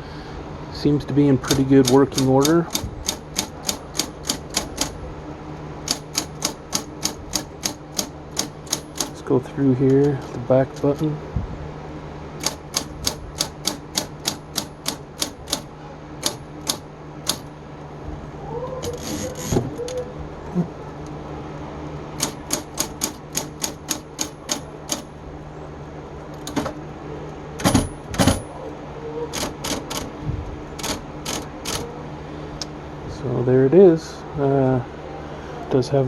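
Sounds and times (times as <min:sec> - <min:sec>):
typewriter motor hum: 0:01.2 - 0:05.1, 0:05.8 - 0:09.4, 0:12.4 - 0:17.6, 0:18.8 - 0:20.0, 0:22.1 - 0:25.2, 0:26.3 - 0:26.8, 0:29.3 - 0:32.0
typewriter keystrokes: 0:01.4 - 0:05.0, 0:05.8 - 0:09.2, 0:12.4 - 0:17.5, 0:22.2 - 0:25.1, 0:26.4 - 0:26.8, 0:29.3 - 0:30.1, 0:30.8 - 0:31.9.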